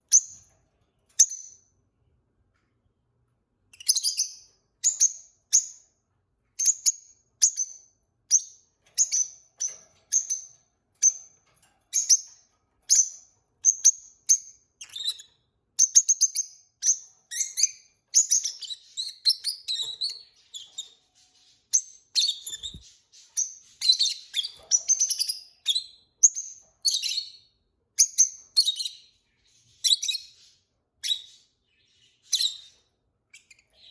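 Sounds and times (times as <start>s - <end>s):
lovebirds chirping: 3.7s - 5.8s, 11.9s - 33.9s.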